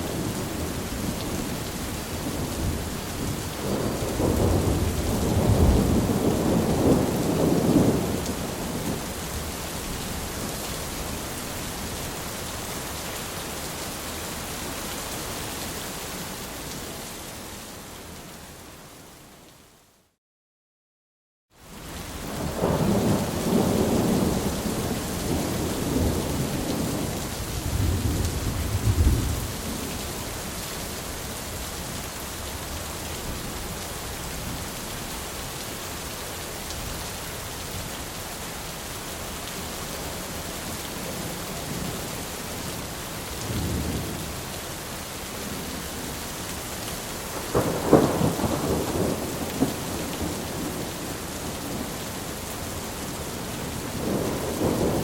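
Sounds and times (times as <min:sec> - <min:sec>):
steady rain: 0:00.0 - 0:20.2, 0:21.5 - 0:55.0
rolling thunder: 0:02.2 - 0:09.0, 0:22.4 - 0:29.9, 0:47.3 - 0:51.9, 0:53.9 - 0:55.0
sharp thunderclap: 0:47.5 - 0:50.9.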